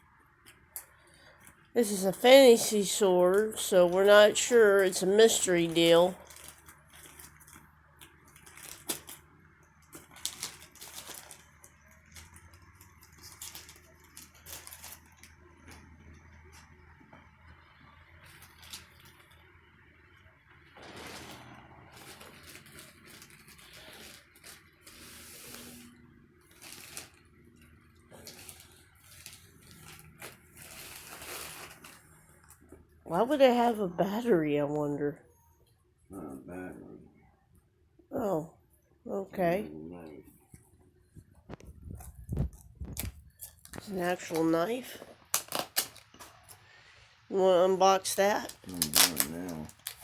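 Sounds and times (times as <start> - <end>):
packaging rustling and crinkling: 3.3 - 15.9, 20.8 - 32.8, 45.0 - 46.6, 48.4 - 50.0
package being opened: 6.2 - 9.3, 10.0 - 15.4, 45.2 - 46.6, 48.5 - 50.0.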